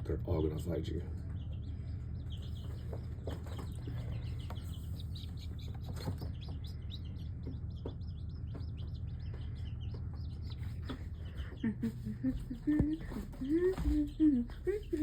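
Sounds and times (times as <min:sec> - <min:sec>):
chicks peeping: 0:00.0 - 0:15.0
steady low hum: 0:00.0 - 0:15.0.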